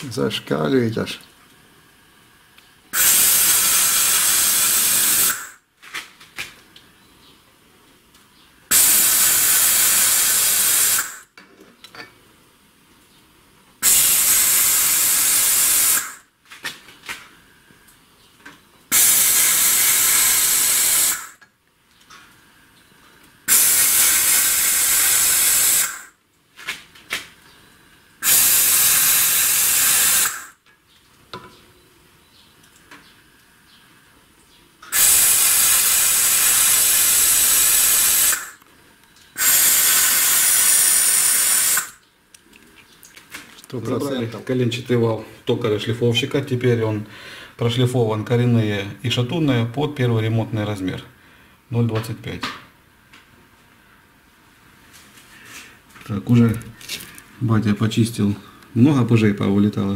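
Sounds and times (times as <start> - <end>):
compressed air hissing: 2.9 - 5.6, 8.7 - 11.3, 13.8 - 16.3, 18.9 - 21.4, 23.4 - 26.2, 28.2 - 30.6, 34.9 - 38.6, 39.4 - 42.0.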